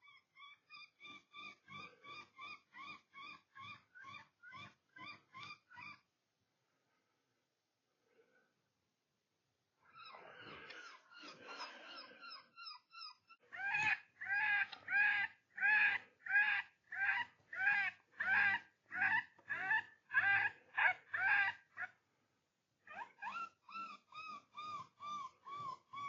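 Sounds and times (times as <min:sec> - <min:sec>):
animal distress cries from caller: 0:11.7 - 0:21.9.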